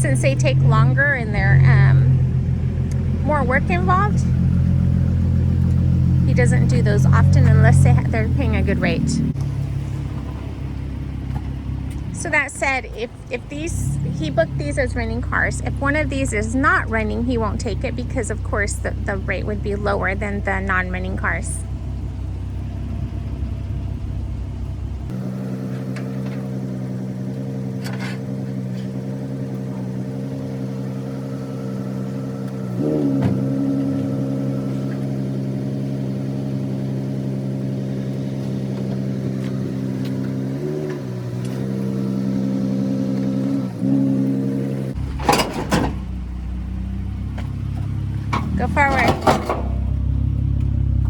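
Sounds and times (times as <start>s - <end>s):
low rumble: 0.0s - 40.6s
vehicle engine idling and revving: 0.0s - 51.0s.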